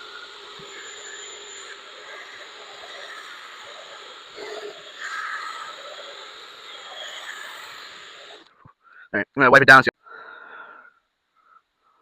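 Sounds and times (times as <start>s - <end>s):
polishing scrubbing hiss: 0.0s - 8.5s.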